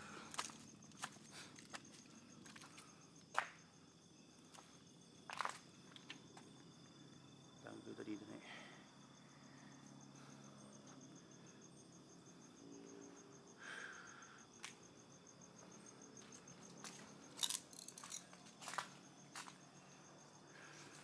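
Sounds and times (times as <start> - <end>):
night insects trilling: 0.0 - 21.0
sharp clicks and crunches: 17.4 - 18.8.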